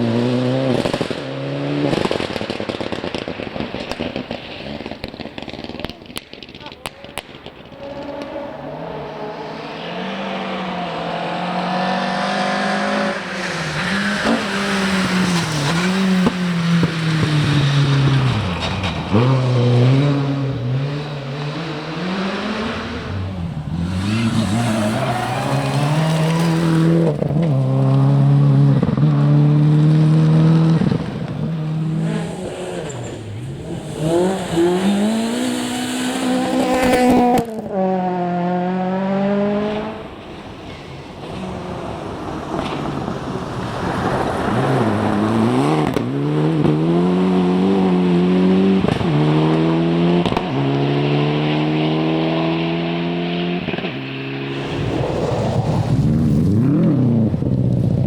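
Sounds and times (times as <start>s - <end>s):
rally car engine revving: 0.0s - 58.0s
sharp cracks: 1.9s - 8.4s.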